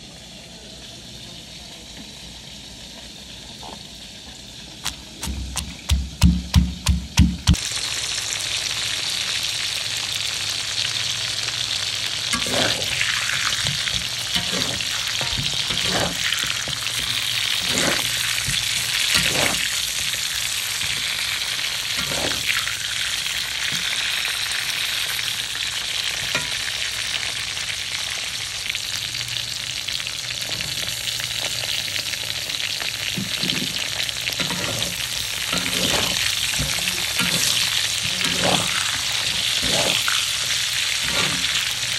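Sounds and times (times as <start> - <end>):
chicken sizzling in hot oil: 0.0 - 41.9
spoon scraping pan: 12.4 - 21.2, 21.8 - 22.7, 33.1 - 41.9.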